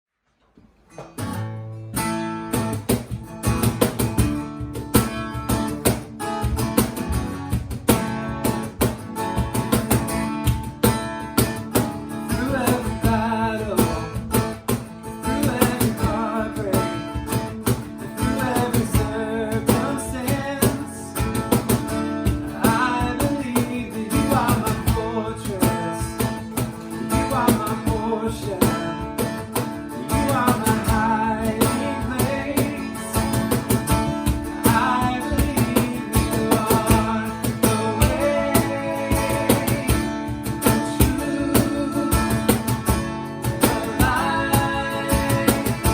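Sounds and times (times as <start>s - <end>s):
strummed acoustic guitar music: 0.5s - 45.9s
person singing: 30.0s - 33.3s, 34.6s - 42.9s, 43.6s - 45.9s.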